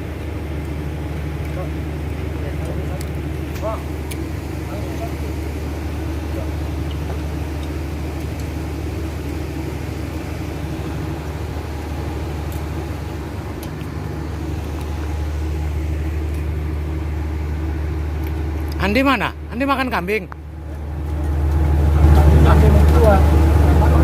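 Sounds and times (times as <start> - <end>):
ship engines droning: 0.0 - 24.0.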